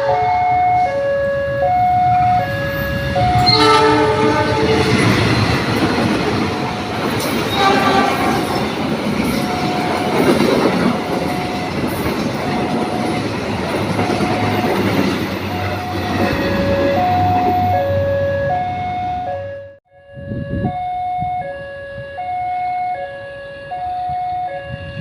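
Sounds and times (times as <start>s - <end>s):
electronic warning tone: 0.0s - 25.0s
train wheels rumbling on rails: 0.7s - 19.3s.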